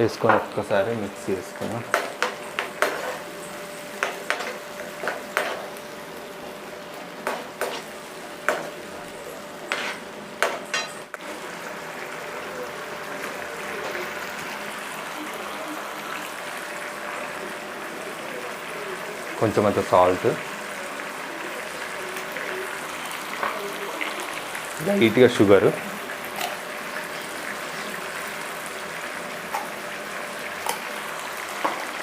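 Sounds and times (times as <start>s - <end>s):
food sizzling in a pan: 0.0s - 32.0s
spoon scraping frying pan: 1.9s - 3.3s, 4.0s - 5.7s, 7.6s - 7.9s, 9.7s - 11.0s.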